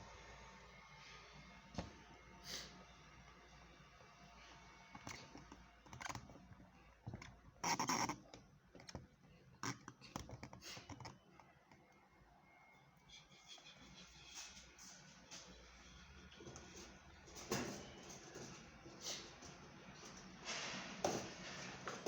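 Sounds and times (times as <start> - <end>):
rustling scrape: 20.4 - 21.8.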